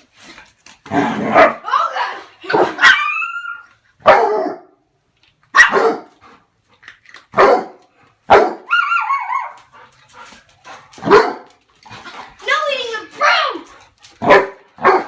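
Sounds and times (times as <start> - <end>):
dog barking: 4.0 - 4.8, 5.5 - 6.1, 7.4 - 9.5, 11.0 - 11.5, 14.2 - 15.0.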